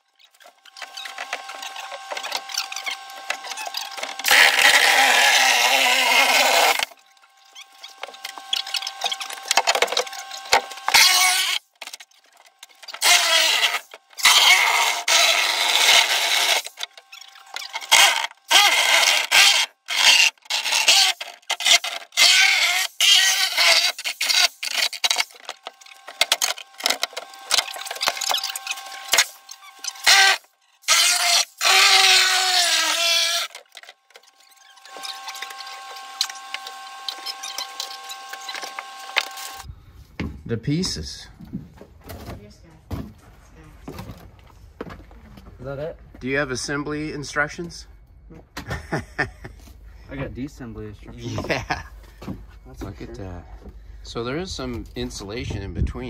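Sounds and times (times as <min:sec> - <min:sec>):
power saw cutting fiberglass: 0:00.2 - 0:39.7, 0:51.1 - 0:51.9.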